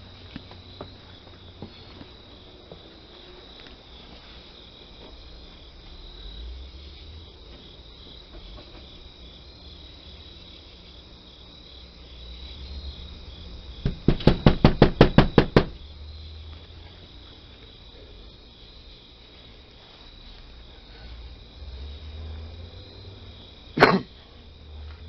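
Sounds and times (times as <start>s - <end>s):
rapid hard knocks: 13.8s - 15.8s.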